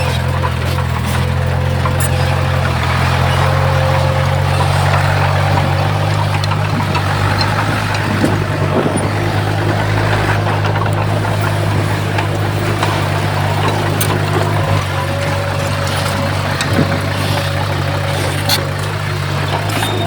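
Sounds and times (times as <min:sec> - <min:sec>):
diesel machinery engine hum: 0:00.0 - 0:20.0
faint clicks and knocks: 0:00.0 - 0:20.0.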